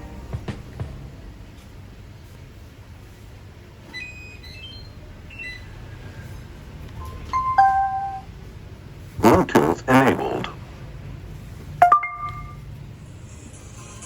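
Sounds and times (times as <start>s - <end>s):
short electronic beeps: 7.1s - 8.3s, 11.8s - 12.6s
three-tone chime: 7.4s - 8.3s, 11.8s - 12.6s.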